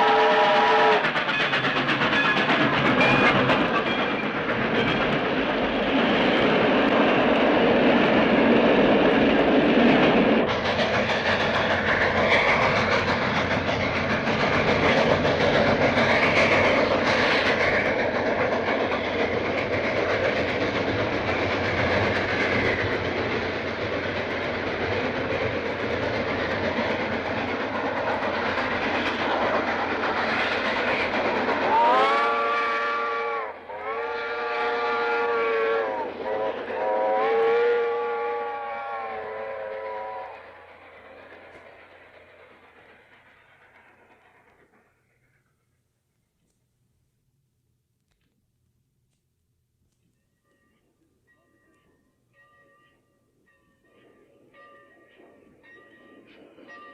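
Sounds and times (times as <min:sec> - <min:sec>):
locomotive whistle blasts: 0:00.0 - 0:01.0, 0:31.7 - 0:40.4
train wheels clattering on rails: 0:00.0 - 0:45.8, 0:52.9 - 0:56.9.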